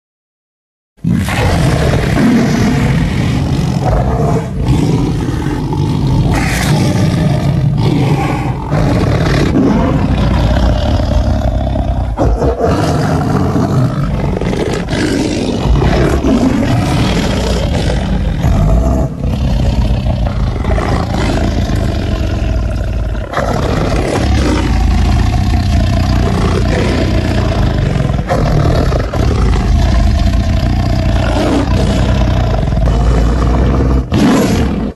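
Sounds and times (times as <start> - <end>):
tiger roaring: 1.0 - 34.9.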